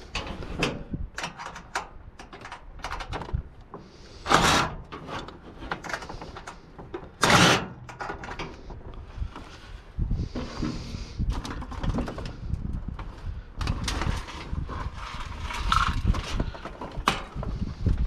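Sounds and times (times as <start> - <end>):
loud scraping rushes: 4.1 - 6.3, 7.2 - 7.8
water cooler parts clattering: 4.2 - 8.8, 10.4 - 12.5, 13.6 - 17.5.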